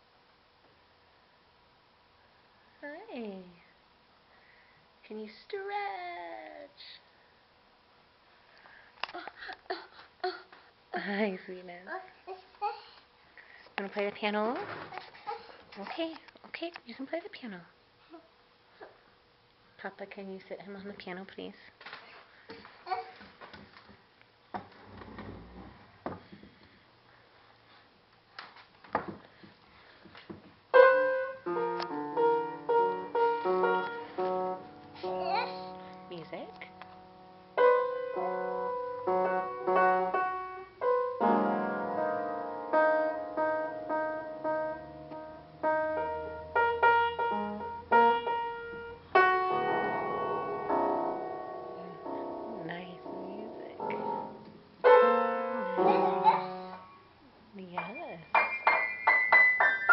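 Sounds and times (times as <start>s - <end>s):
piano keys sounding: 30.8s - 57.0s, 57.8s - 59.9s.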